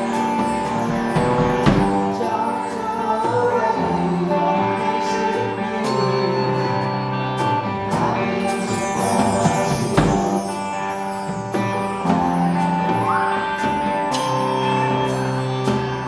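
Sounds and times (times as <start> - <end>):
held guitar chords: 0.0 - 16.0
drums and cymbal hits: 8.5 - 14.3.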